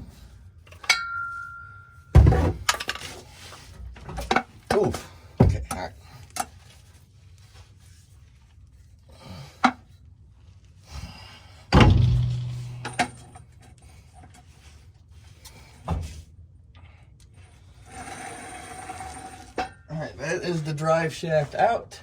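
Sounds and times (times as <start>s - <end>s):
heavy clank with ringing hum: 0.8s - 2.7s, 11.8s - 13.7s
metal knocks and clanks: 11.8s - 13.7s.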